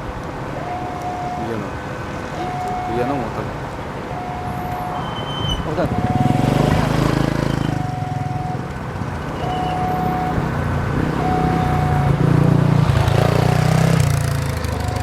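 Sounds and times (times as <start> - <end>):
electronic warning beeps: 0.6 - 1.7, 2.4 - 3.5, 4.1 - 8.6, 9.4 - 10.5, 11.2 - 12.2
vehicle engine running: 5.6 - 15.0.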